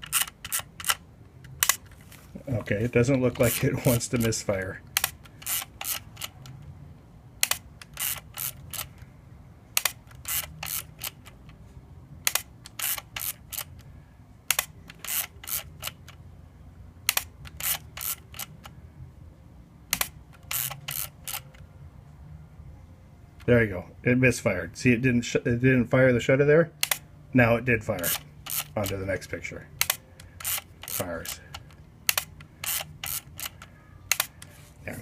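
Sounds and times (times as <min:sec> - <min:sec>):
film advance ratchet clicks: 0:00.0 - 0:01.8, 0:03.3 - 0:06.7, 0:07.4 - 0:09.0, 0:09.8 - 0:11.6, 0:12.2 - 0:13.9, 0:14.5 - 0:16.2, 0:17.0 - 0:18.7, 0:19.9 - 0:21.6, 0:26.8 - 0:27.0, 0:28.0 - 0:29.0, 0:29.8 - 0:34.5
camera shutter click: 0:00.0 - 0:01.9, 0:09.8 - 0:11.4, 0:12.3 - 0:13.7, 0:14.5 - 0:16.2, 0:17.1 - 0:18.7, 0:19.9 - 0:21.6, 0:28.0 - 0:29.0, 0:29.8 - 0:31.4, 0:32.1 - 0:34.4.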